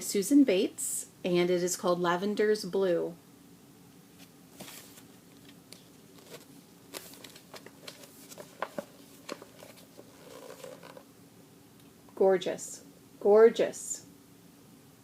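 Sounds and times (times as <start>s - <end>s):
magazine pages rustling: 4.2s - 11.1s.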